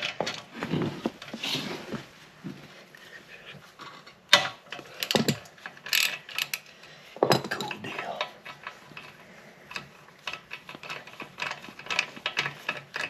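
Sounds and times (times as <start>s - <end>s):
metal tools clinking on bolts: 3.9s - 6.6s, 7.2s - 13.0s.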